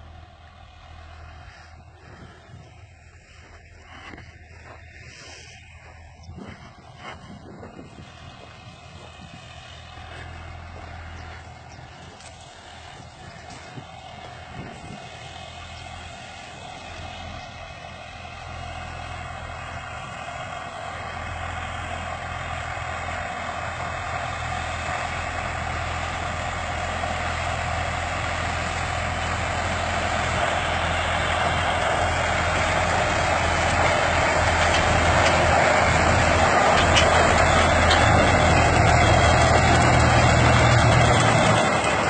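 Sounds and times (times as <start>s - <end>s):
tractor diesel engine running: 0.0s - 42.0s
harvester mechanical clatter: 21.3s - 42.0s.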